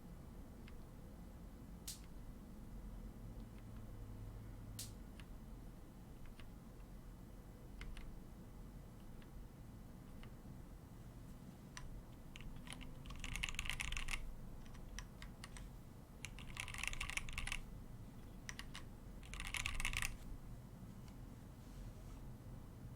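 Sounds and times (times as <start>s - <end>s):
typing on mechanical keyboard: 7.8s - 8.1s, 11.8s - 17.7s, 18.4s - 20.2s.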